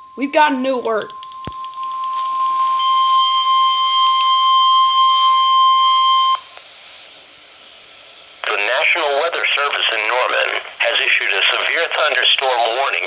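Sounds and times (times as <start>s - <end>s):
steady electronic alarm tone: 0.0s - 6.6s
crackling clicks: 0.8s - 2.9s, 12.0s - 12.7s.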